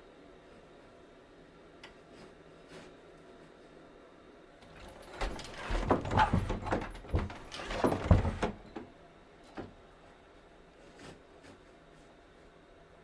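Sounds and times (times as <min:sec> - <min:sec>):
metal clanking and knocking: 0:04.7 - 0:08.9.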